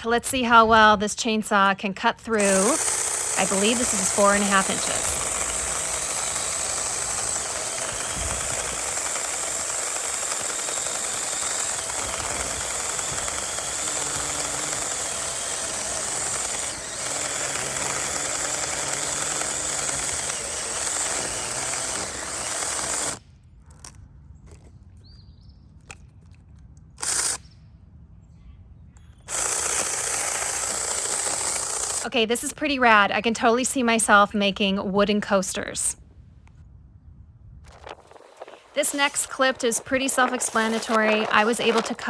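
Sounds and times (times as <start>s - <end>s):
mini chainsaw cutting branch: 2.3s - 23.2s, 27.0s - 27.5s, 29.3s - 32.8s, 37.7s - 42.0s.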